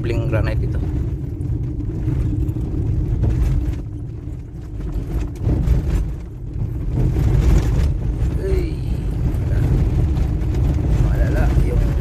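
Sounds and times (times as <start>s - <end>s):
vehicle engine and tyres rumble: 0.0s - 12.0s
vehicle knocks and jolts: 0.0s - 12.0s.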